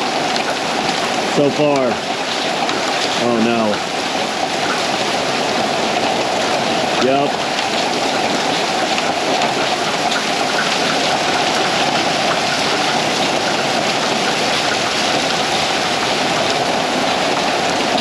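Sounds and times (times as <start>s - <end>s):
hailstones ticking: 0.0s - 18.0s
heavy rain on roof: 0.0s - 18.0s.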